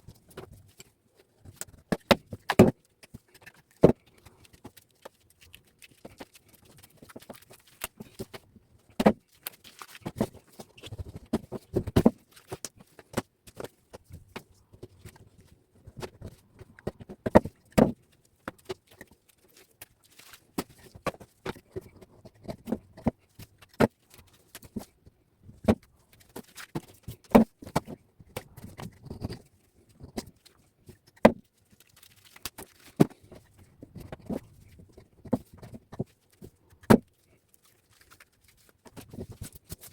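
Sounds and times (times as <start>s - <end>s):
wire rustling: 28.6s - 35.4s, 37.1s - 39.9s.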